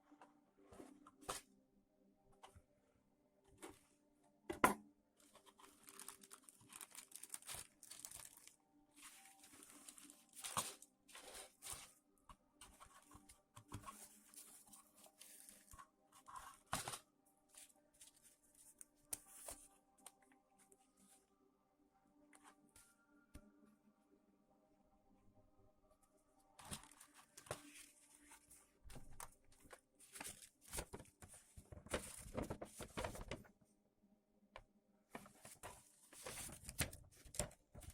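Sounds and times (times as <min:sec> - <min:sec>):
plastic packaging crinkling: 0:05.2 - 0:11.6.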